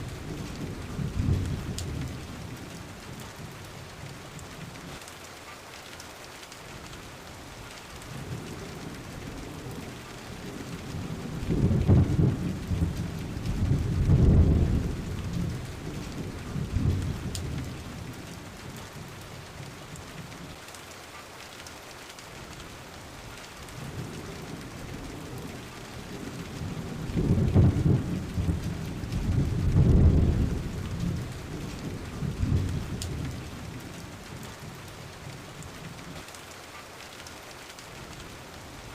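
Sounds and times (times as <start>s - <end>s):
steady rain falling: 0.0s - 38.9s
thunder rolling: 11.0s - 17.8s, 26.1s - 33.8s.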